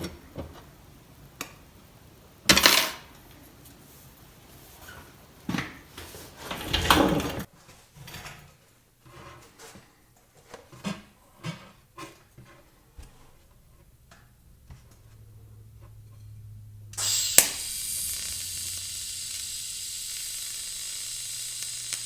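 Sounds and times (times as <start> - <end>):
low steady hum: 13.3 - 22.0.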